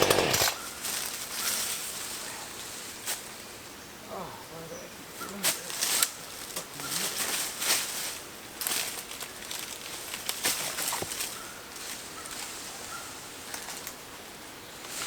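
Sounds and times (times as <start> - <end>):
dry leaves rustling: 0.0 - 3.5, 5.2 - 14.0.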